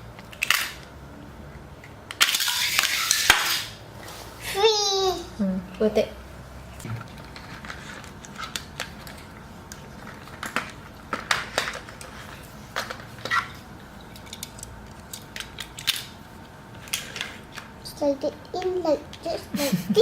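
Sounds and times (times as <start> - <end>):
plastic pieces clicking and knocking: 2.1 - 3.7, 14.1 - 16.2.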